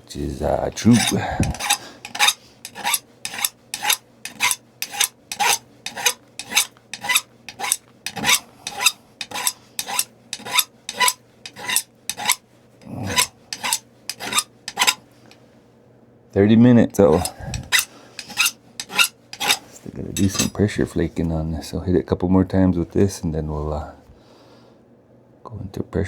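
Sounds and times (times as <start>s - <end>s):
stone edge rasping with abrader: 0.8s - 15.0s, 17.1s - 20.6s.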